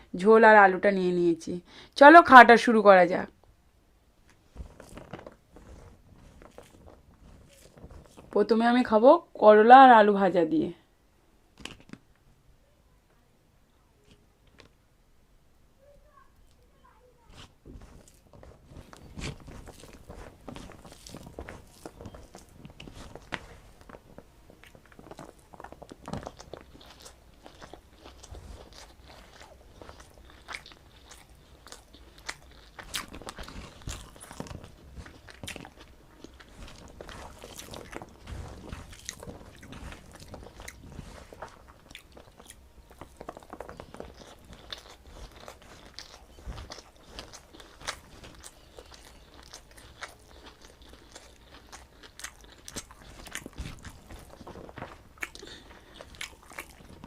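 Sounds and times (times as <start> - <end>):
person chewing crunchy food: 4.4 - 8.4, 17.3 - 57.0.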